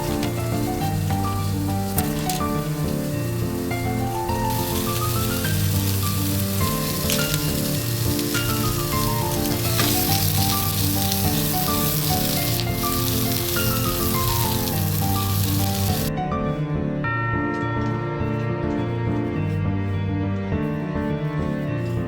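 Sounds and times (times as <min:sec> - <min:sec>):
food sizzling in a pan: 0:00.0 - 0:16.1
piano music: 0:00.0 - 0:22.0.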